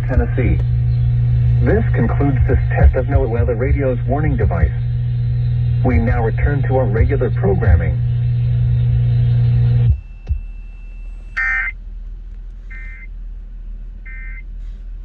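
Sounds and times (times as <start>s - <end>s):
low buzzing hum from speaker: 0.0s - 15.0s
short electronic beeps: 9.9s - 11.8s, 12.7s - 13.1s, 14.1s - 14.5s.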